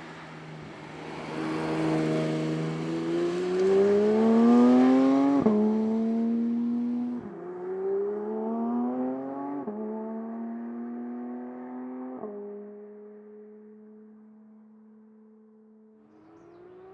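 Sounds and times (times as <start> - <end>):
car engine accelerating hard: 1.1 - 13.2.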